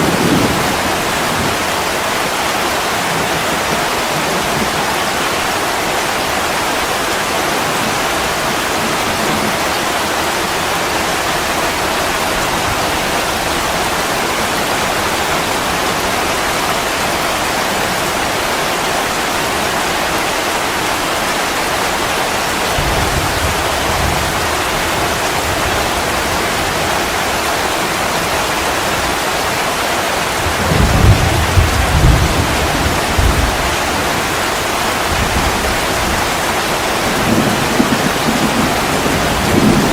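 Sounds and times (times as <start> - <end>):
thunder rumbling: 0.0 - 5.0, 22.6 - 27.2, 30.4 - 39.9
heavy rain falling: 0.0 - 39.9.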